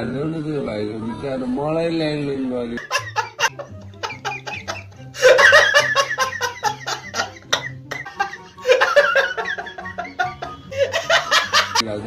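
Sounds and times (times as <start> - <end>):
group of people laughing: 2.8 - 11.8.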